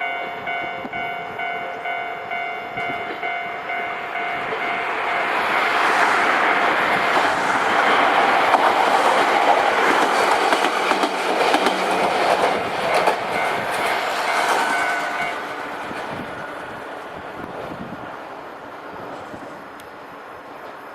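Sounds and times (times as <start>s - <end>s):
electric train passing: 0.0s - 20.9s
train wheels clattering: 4.4s - 16.9s.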